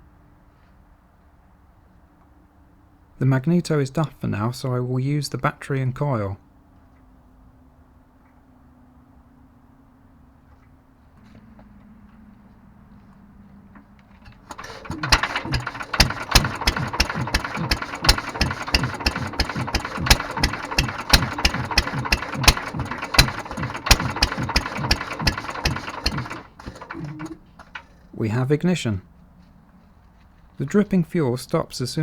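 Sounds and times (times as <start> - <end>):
stationary engine running: 14.2 - 28.0.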